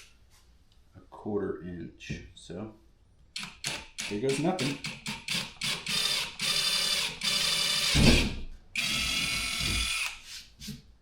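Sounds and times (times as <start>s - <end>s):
power drill whining: 5.3s - 8.0s, 8.8s - 10.2s.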